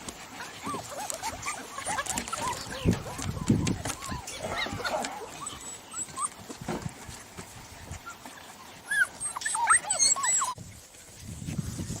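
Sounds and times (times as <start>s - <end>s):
dogs whining and yipping: 0.3s - 6.8s, 7.8s - 10.6s.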